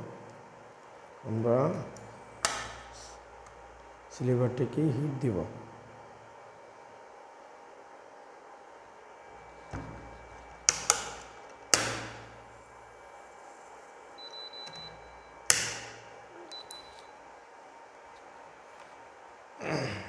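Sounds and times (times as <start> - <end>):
plastic lids snapping shut: 2.4 - 3.6, 9.7 - 12.5, 14.7 - 16.5.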